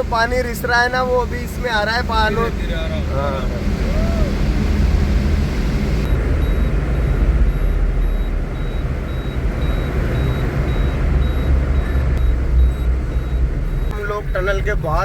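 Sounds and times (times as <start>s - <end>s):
car engine and tyre rumble: 0.0s - 15.0s
faint high beep: 6.0s - 14.1s.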